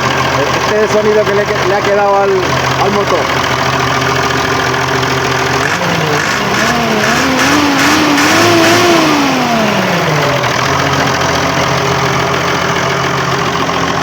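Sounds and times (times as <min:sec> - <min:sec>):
diesel tractor engine revving: 0:00.0 - 0:14.0.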